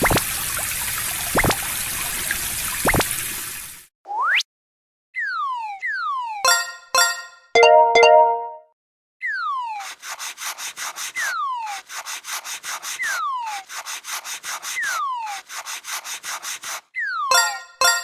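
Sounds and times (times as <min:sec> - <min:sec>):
cartoon rasping scraping strokes: 0:09.6 - 0:16.9.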